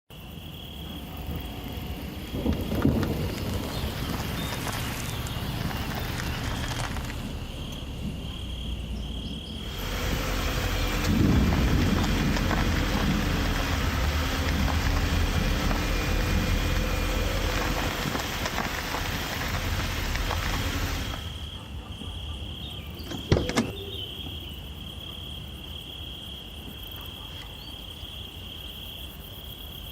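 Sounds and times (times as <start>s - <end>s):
truck engine humming: 0.2s - 24.4s
deep rumble: 0.7s - 21.5s
steady rain: 1.0s - 8.2s, 9.6s - 21.4s.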